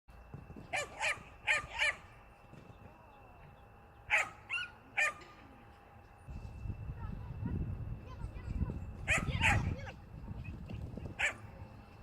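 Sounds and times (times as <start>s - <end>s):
puppy barking high yaps: 0.7s - 2.0s, 4.1s - 5.2s, 9.1s - 9.8s, 11.2s - 11.4s.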